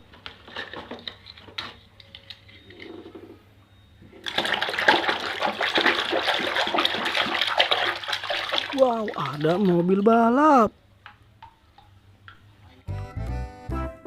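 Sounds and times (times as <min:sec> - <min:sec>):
water running and splashing: 0:04.2 - 0:10.7.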